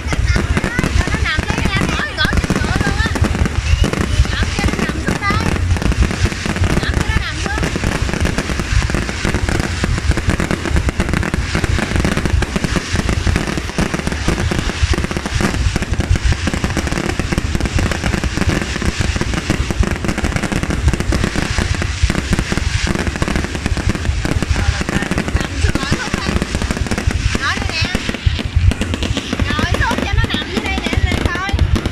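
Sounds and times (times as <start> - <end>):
fireworks bangs and crackles: 0.0 - 31.9.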